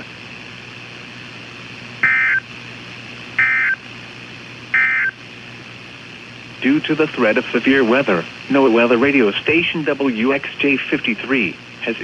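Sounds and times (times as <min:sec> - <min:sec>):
steady low hiss and hum: 0:00.0 - 0:12.0
chirping digital data tones: 0:02.0 - 0:02.4, 0:03.4 - 0:03.8, 0:04.8 - 0:05.2.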